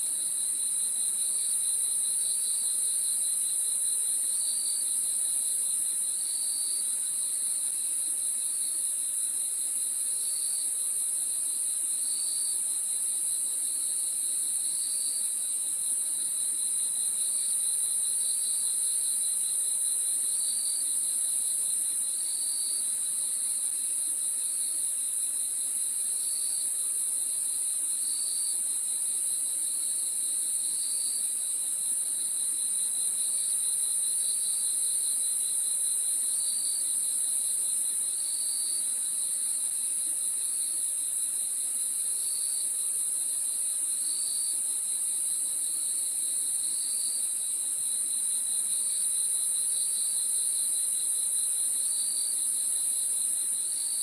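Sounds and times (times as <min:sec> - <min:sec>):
crickets trilling: 0:25.9 - 0:52.5.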